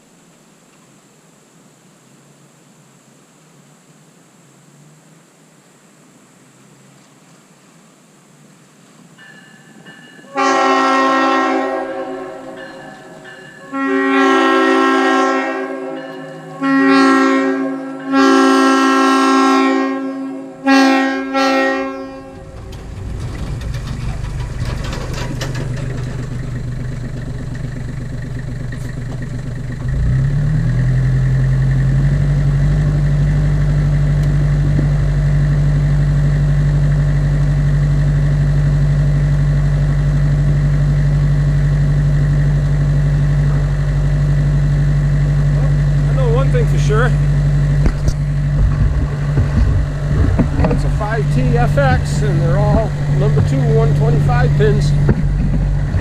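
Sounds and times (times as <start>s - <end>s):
locomotive air horn blasts: 10.3s - 22.7s
engine running: 21.3s - 56.0s.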